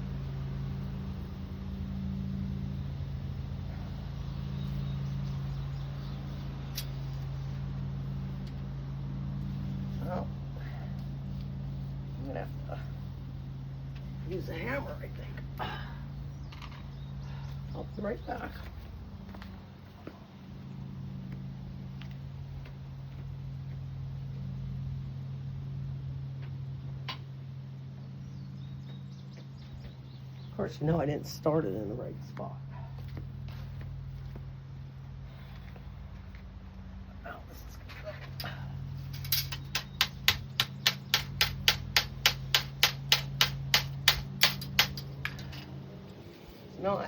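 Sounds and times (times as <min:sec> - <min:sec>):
steady low hum: 0:00.0 - 0:47.0
small hammer tapping metal: 0:39.1 - 0:45.7.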